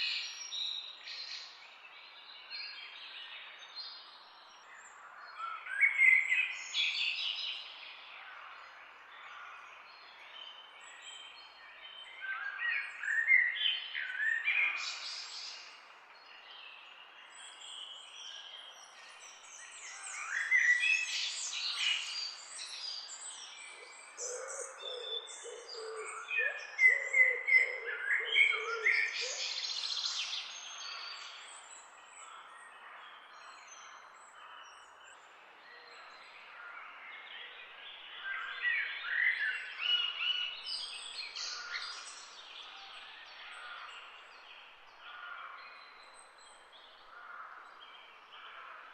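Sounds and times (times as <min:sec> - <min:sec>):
birds chirping and singing: 0:16.4 - 0:48.8.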